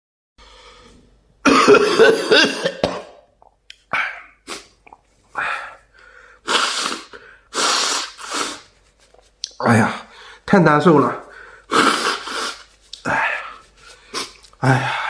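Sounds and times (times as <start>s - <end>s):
man coughing: 1.4s - 3.3s.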